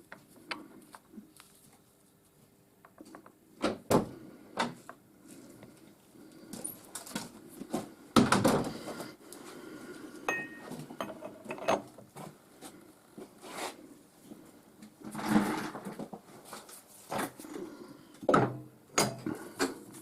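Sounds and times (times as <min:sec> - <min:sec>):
metallic ring: 0:10.3 - 0:11.8
metal tools clinking: 0:10.3 - 0:11.9.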